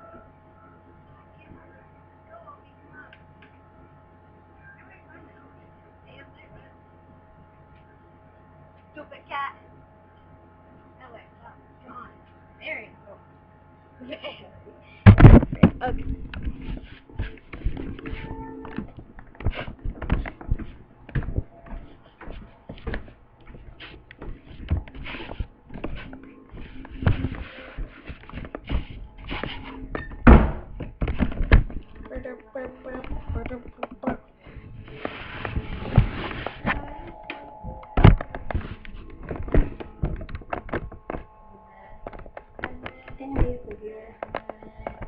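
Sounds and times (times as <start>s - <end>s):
irregular knocks and thuds: 18.8s - 32.0s.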